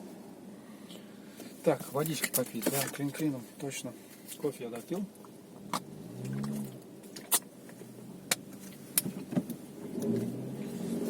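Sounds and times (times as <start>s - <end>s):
car running heard from inside: 5.0s - 11.0s.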